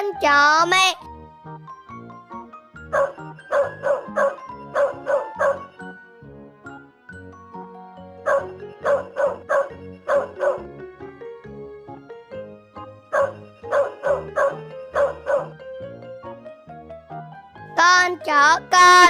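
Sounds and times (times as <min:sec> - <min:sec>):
light background music: 0:00.0 - 0:19.0
dog barking: 0:02.9 - 0:05.7, 0:08.2 - 0:10.8, 0:13.1 - 0:15.6.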